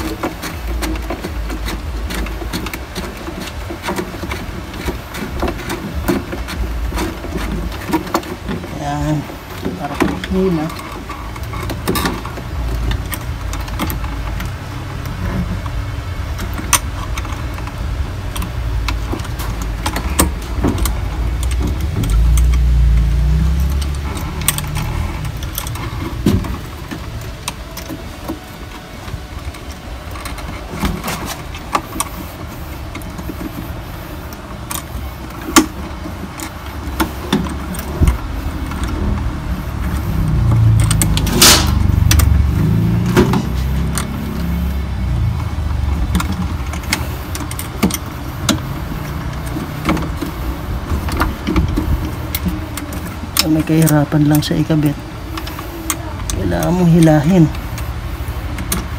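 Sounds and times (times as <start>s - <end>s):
clicks and clinks of parts handled: 0.0s - 58.9s
steady low rumble: 0.0s - 58.9s.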